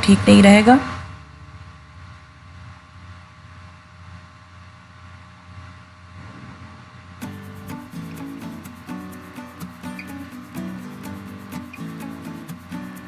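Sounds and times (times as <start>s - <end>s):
low steady hum: 0.0s - 8.1s
background music: 7.2s - 13.0s.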